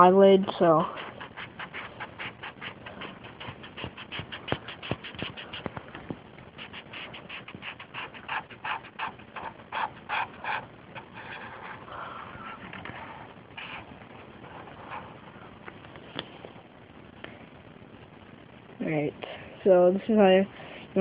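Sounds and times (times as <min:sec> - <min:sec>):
marker scratching on paper: 0:00.7 - 0:05.8, 0:06.6 - 0:15.2.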